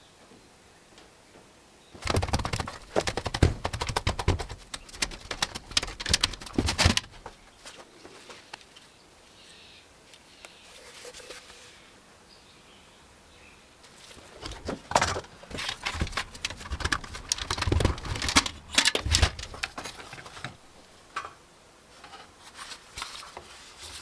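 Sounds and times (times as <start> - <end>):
computer parts clattering: 2.0 - 7.5, 14.2 - 20.9.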